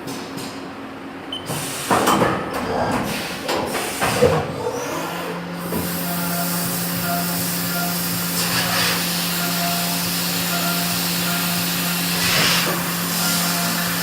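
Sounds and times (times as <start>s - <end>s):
machine humming tone: 5.0s - 14.0s.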